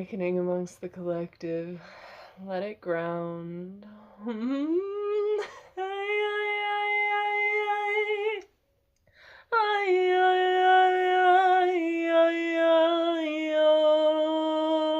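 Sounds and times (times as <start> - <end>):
woman singing held tones: 3.7 - 8.5, 9.5 - 14.9.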